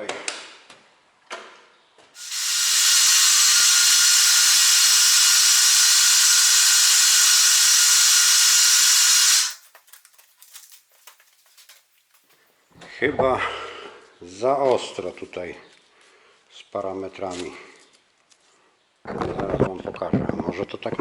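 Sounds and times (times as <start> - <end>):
loud steady hiss: 2.2 - 9.7.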